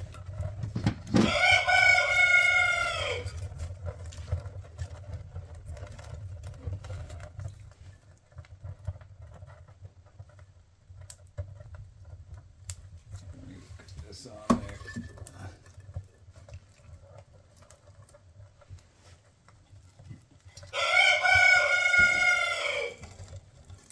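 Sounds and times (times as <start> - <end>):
rooster crowing: 1.2 - 3.4, 20.7 - 23.1.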